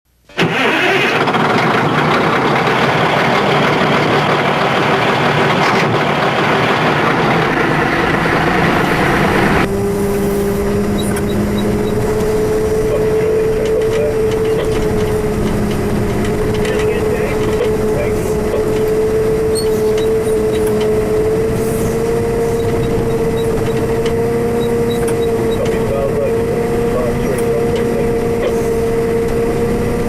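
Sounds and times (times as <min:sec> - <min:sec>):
diesel machinery engines running: 0:00.1 - 0:30.0
held rising tone: 0:00.4 - 0:30.0
loud rushing noise: 0:00.5 - 0:23.7.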